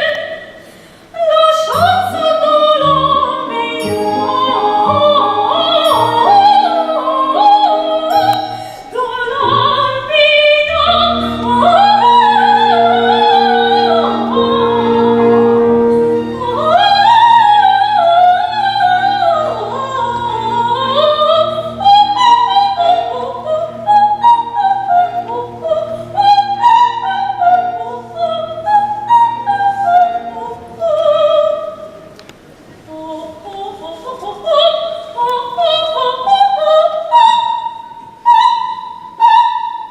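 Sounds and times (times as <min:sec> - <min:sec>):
operatic singing with vibrato: 0:00.0 - 0:32.2, 0:32.8 - 0:39.9
instrumental accompaniment: 0:01.7 - 0:32.9.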